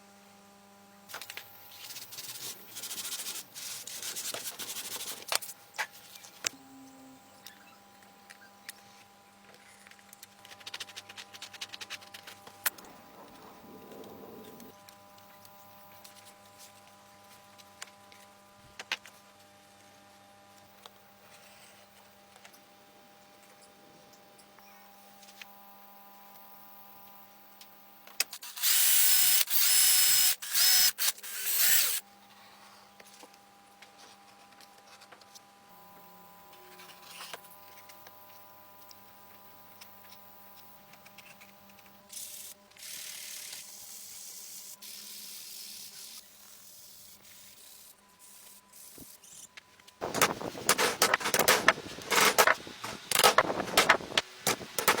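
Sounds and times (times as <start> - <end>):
power tool whining: 28.4 - 32.0, 50.0 - 55.0.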